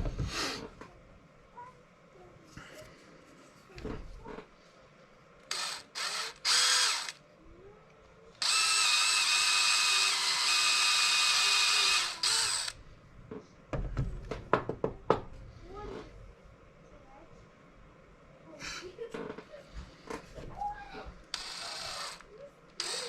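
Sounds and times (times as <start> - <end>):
electric drill running: 5.5 - 7.2, 8.4 - 12.8, 21.3 - 23.0.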